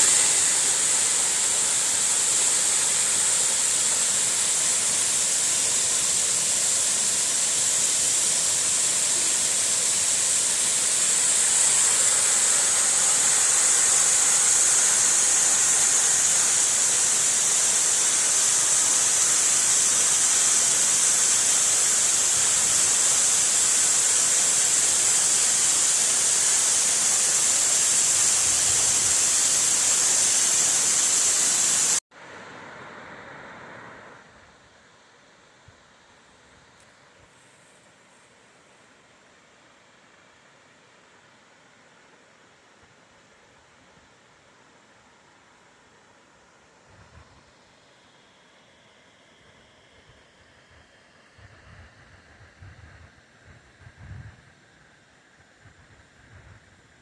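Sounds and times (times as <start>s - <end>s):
waterfall rushing: 0.0s - 34.1s.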